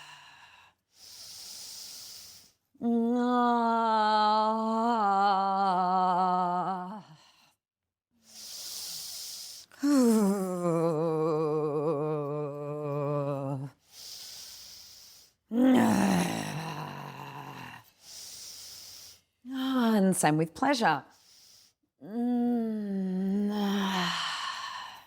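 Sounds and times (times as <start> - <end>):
hissing in-breath: 0.0 - 2.6, 8.2 - 10.5, 13.7 - 19.4, 21.1 - 21.9
woman sustaining vocal tones: 2.8 - 7.3, 9.8 - 13.8, 15.5 - 17.8, 22.0 - 25.0.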